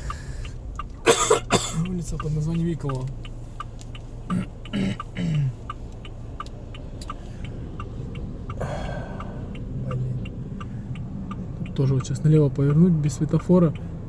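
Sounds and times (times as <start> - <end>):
engine hum and road noise: 0.0 - 14.0
turn signal ticking: 0.0 - 14.0
person clearing throat: 1.1 - 1.8, 4.3 - 5.5.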